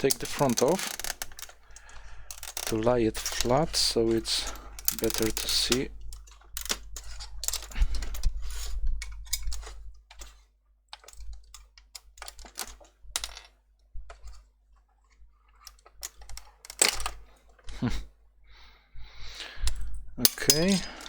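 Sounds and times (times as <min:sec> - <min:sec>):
plastic cover clicks and rattles: 0:00.0 - 0:08.3.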